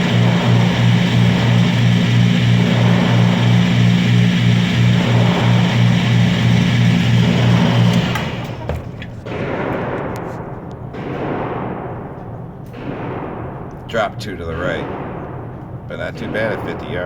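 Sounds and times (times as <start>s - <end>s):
pulsing motor hum: 0.0s - 9.2s.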